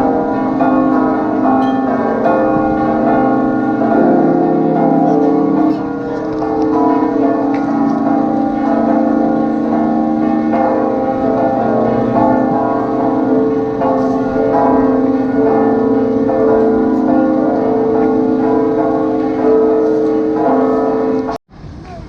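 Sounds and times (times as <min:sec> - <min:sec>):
church bells ringing: 0:00.0 - 0:21.4.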